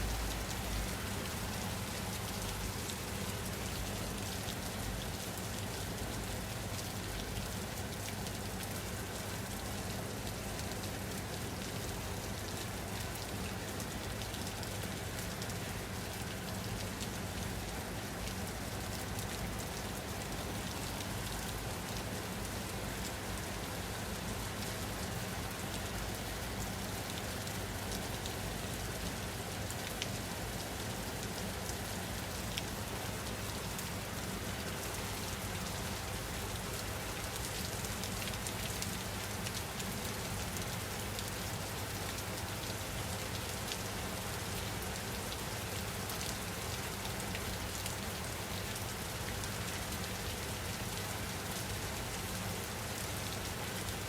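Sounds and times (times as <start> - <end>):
rain falling: 0.0 - 54.0.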